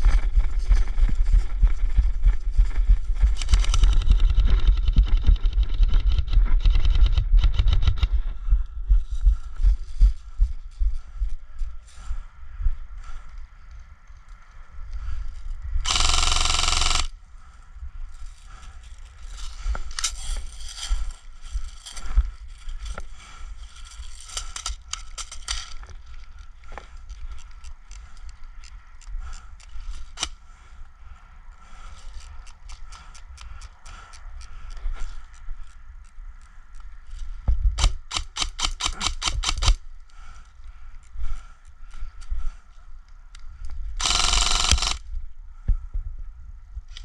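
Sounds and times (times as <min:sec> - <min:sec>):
sharp clicks: 0:03.2 - 0:08.2, 0:15.8 - 0:17.1, 0:24.2 - 0:30.4, 0:37.7 - 0:39.8, 0:44.0 - 0:45.0.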